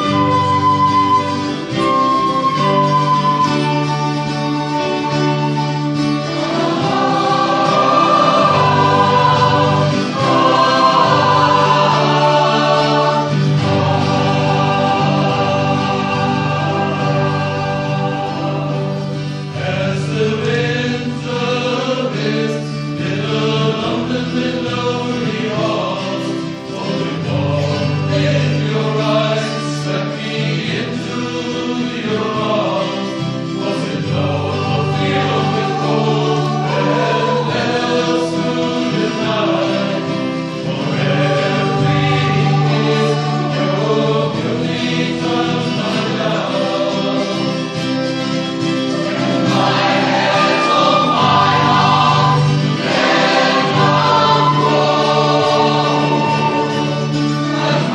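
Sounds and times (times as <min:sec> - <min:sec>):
held bass notes: 0:00.0 - 0:21.8, 0:33.9 - 0:57.9
choir singing: 0:00.0 - 0:57.9.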